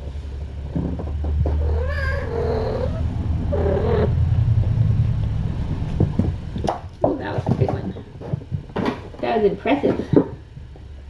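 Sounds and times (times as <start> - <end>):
steady low rumble: 0.3 - 7.1
cat meowing: 1.4 - 4.7.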